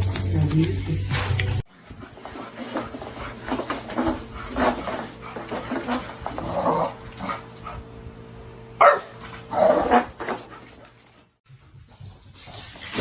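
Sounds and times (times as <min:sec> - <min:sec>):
dog barking: 0:08.8 - 0:09.2.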